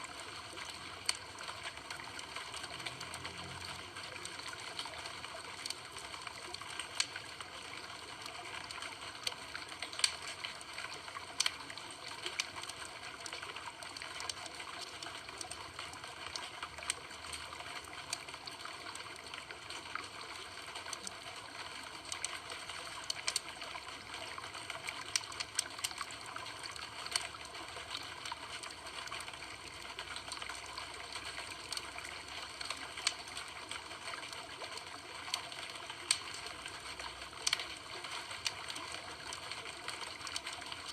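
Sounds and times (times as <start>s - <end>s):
fire crackling and popping: 8.7s - 11.6s, 22.0s - 23.6s, 24.9s - 29.2s, 34.8s - 40.9s.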